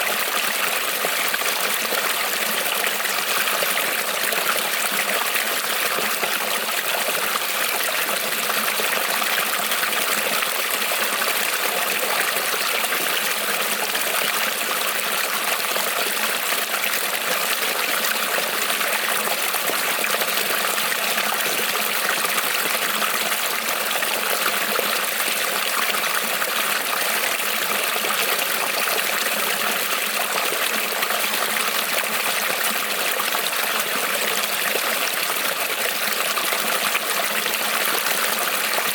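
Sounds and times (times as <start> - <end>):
creek trickling over stones: 0.0 - 38.9.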